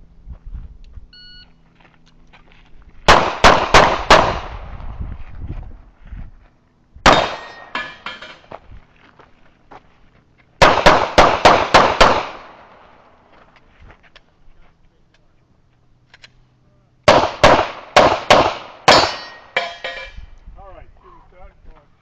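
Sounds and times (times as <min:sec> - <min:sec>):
pistol firing rapidly: 0:03.1 - 0:04.6, 0:07.1 - 0:07.7, 0:10.6 - 0:12.6, 0:17.1 - 0:19.2.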